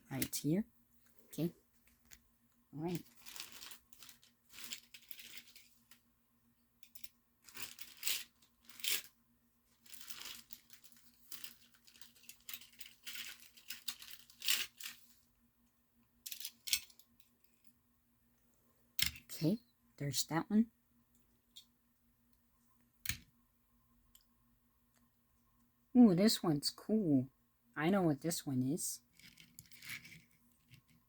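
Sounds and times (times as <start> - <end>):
packaging tearing and crinkling: 3.0 - 5.7, 7.4 - 9.1, 9.8 - 15.0.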